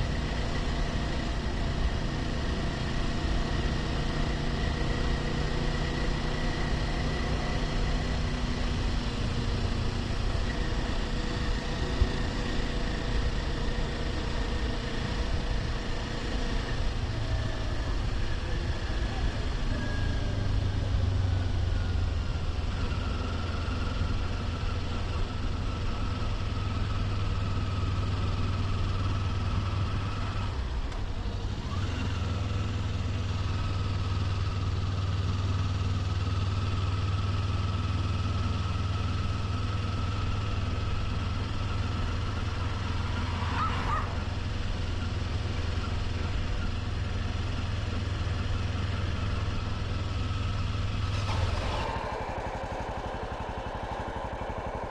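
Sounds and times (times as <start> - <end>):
motorcycle engine running: 0.0 - 54.9.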